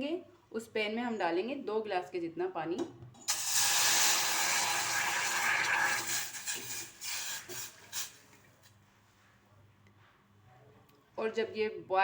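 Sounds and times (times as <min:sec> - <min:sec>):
water pouring into a pan: 0:03.3 - 0:08.1.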